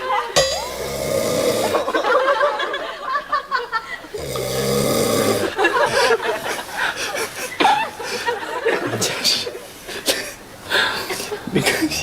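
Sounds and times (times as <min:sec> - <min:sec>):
man snoring heavily: 0:00.7 - 0:02.0, 0:04.2 - 0:05.6
laughter: 0:01.6 - 0:04.2, 0:05.4 - 0:09.3, 0:11.1 - 0:12.0.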